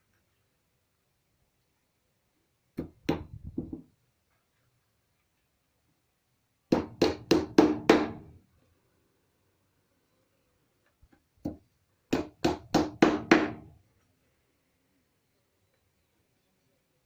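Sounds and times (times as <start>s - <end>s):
hammer striking wood: 2.8s - 3.9s, 6.7s - 8.4s, 11.4s - 13.7s.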